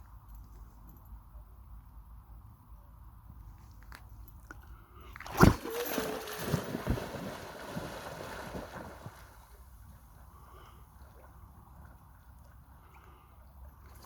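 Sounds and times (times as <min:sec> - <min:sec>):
dog splashing into water: 0:05.2 - 0:09.6
water sloshing: 0:05.2 - 0:09.6.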